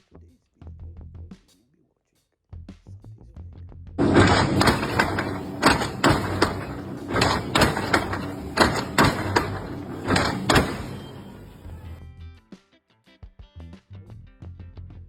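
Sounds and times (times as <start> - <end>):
heavy machinery knocks: 4.0 - 12.0
low machinery rumble: 4.0 - 12.0.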